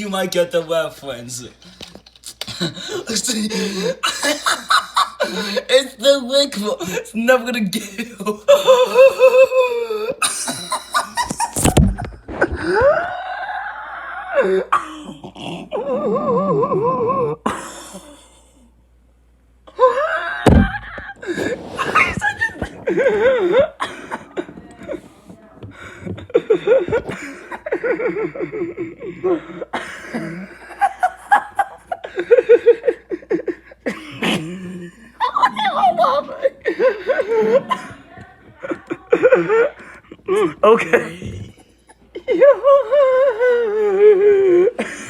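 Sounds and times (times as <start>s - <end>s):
child laughing: 19.8s - 25.0s, 35.1s - 39.8s.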